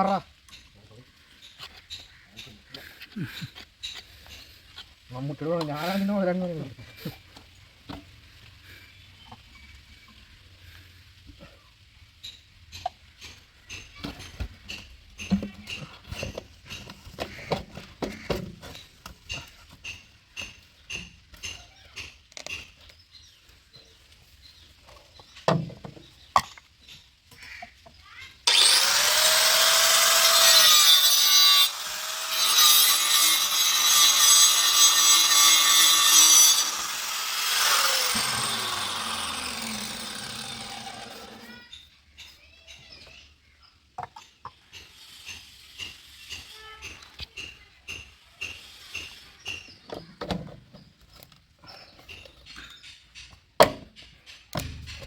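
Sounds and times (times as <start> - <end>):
power tool running: 28.4 - 41.6.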